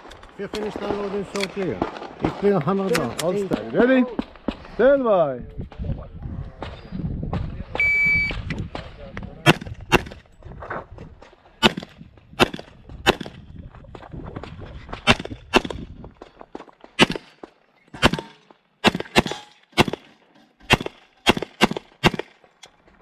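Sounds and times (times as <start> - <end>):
pistol shots: 9.4 - 10.2, 11.6 - 13.4, 15.1 - 15.8, 17.0 - 17.4, 18.0 - 22.4.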